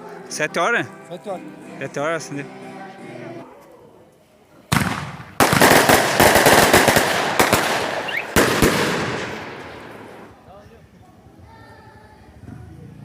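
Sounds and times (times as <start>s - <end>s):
firecrackers crackling and banging: 4.7s - 10.4s.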